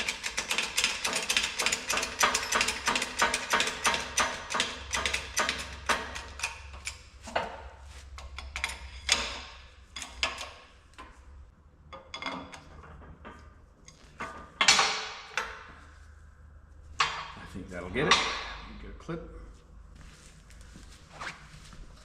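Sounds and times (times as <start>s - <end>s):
metallic clicks of tools: 0.0s - 7.1s.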